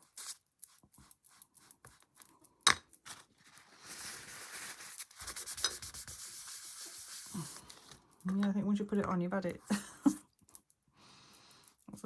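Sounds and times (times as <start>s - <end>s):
small clicks and taps of handling: 10.3s - 10.8s.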